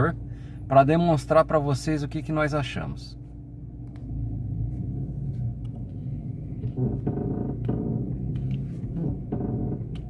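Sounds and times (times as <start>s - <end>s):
car engine idling: 0.0s - 10.0s
suspension creaking groans: 3.9s - 10.0s.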